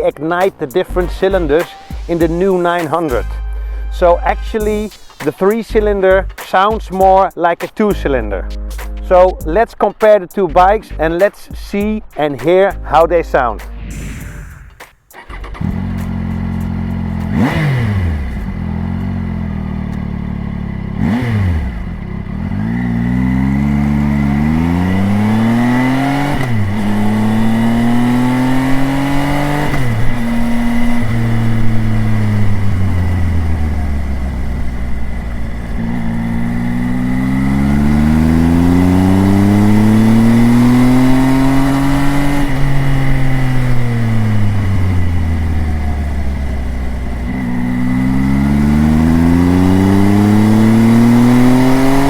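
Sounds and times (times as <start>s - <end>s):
motorcycle engine revving and accelerating: 15.2s - 52.0s.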